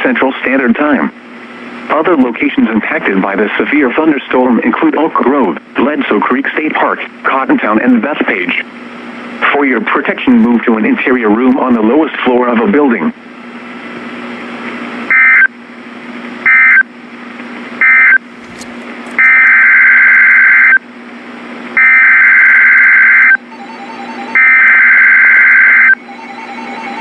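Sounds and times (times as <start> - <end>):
receiver hiss: 14.6 - 15.5, 16.2 - 16.8, 17.6 - 18.2, 19.1 - 20.8, 21.6 - 23.4, 24.4 - 26.0
buzzy digital alert bursts: 24.1 - 27.0.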